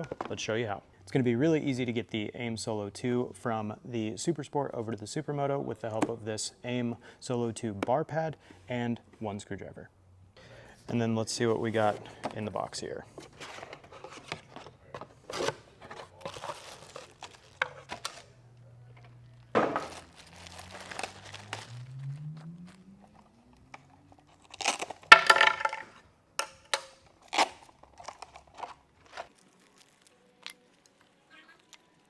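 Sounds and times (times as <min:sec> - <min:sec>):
plastic packaging crinkling and tearing: 0:13.3 - 0:18.4, 0:19.2 - 0:22.8, 0:24.2 - 0:25.2, 0:27.2 - 0:32.0.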